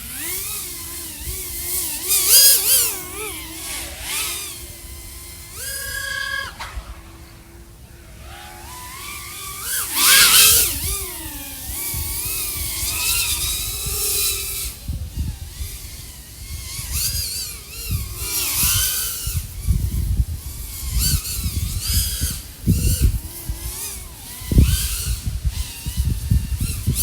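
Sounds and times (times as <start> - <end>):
quadcopter motors whining: 0.0 - 27.0.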